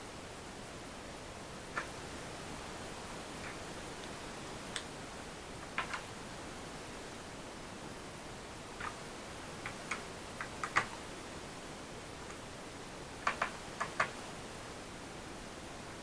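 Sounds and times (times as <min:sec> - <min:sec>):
steady hiss: 0:00.0 - 0:16.0.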